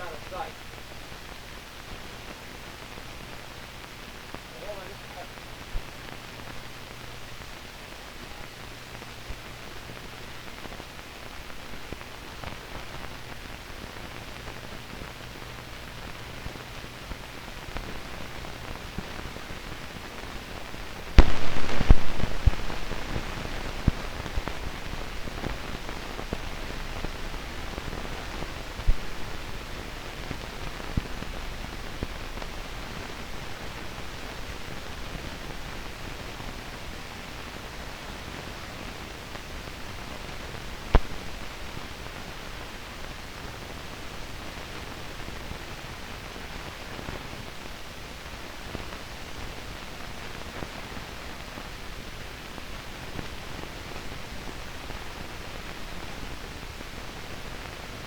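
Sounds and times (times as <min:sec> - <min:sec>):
faint hum: 0:00.0 - 0:58.0
film soundtrack hiss and crackle: 0:00.0 - 0:58.0
clicks and pops: 0:21.2 - 0:23.2
sudden loud burst of noise: 0:21.2 - 0:24.3.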